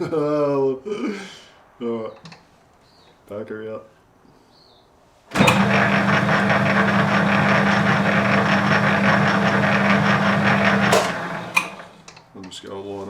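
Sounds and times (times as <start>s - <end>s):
lathe motor humming: 5.3s - 12.1s
lathe gear train rattling: 5.3s - 12.2s.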